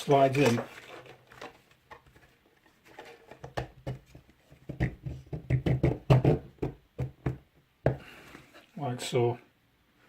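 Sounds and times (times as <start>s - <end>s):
plastic clicks and knocks: 2.9s - 8.0s.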